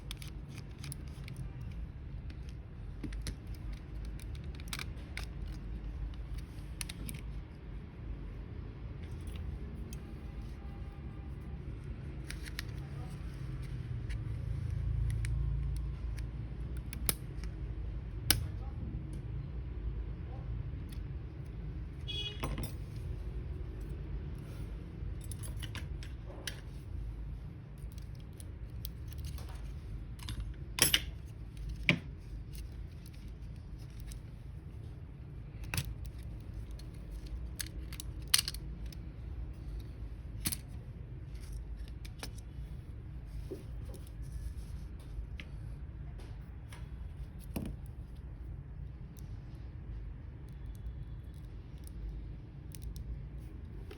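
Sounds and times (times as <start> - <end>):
clicks and rattles of tools and parts: 0.0 - 7.3, 24.4 - 26.8, 27.8 - 34.8, 35.5 - 42.7
steady low hum: 0.0 - 53.9.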